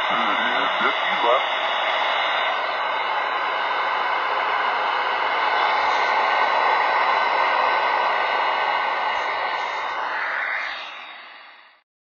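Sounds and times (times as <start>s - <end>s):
radio static hiss: 0.0s - 3.7s, 5.4s - 7.7s, 8.7s - 11.1s
faint steady tones: 0.0s - 4.2s.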